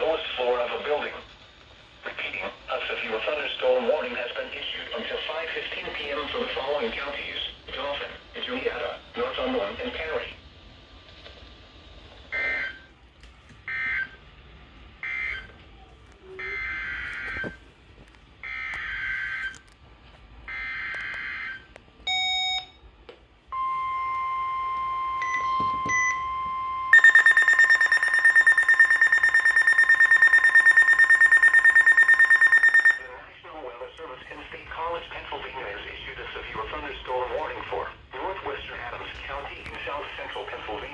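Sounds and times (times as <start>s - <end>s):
harsh buzzing alarm tone: 12.3s - 12.9s, 16.4s - 17.6s, 23.6s - 33.1s
steady attention tone: 23.5s - 33.3s
alert data bursts: 26.9s - 33.1s.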